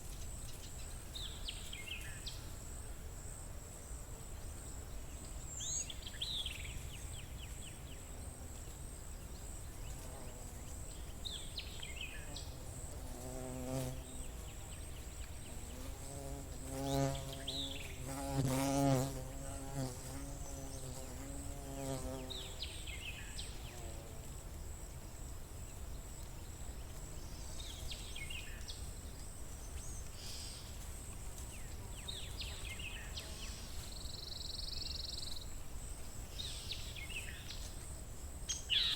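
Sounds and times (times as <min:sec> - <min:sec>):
songbird chirping: 0:05.0 - 0:24.0
flying insect buzzing: 0:11.9 - 0:24.4.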